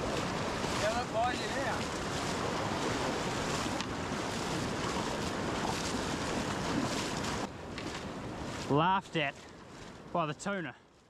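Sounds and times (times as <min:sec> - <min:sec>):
wind buffeting microphone: 0:00.0 - 0:08.7
surf waves breaking: 0:00.0 - 0:10.4.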